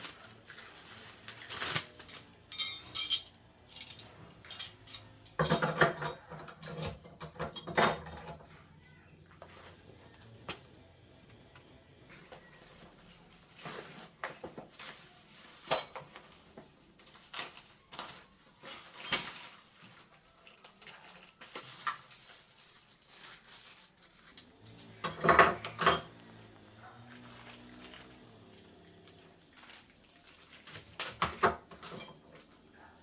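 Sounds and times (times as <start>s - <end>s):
metal tools clinking: 1.4s - 8.5s, 24.4s - 28.6s, 30.7s - 32.5s.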